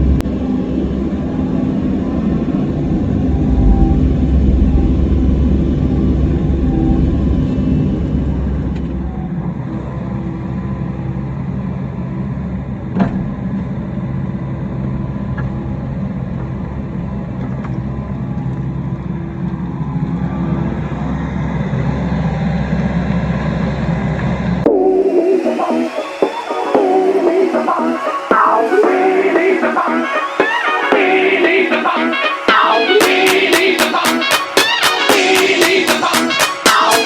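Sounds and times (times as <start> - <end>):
excavator diesel engine running: 0.0 - 24.9.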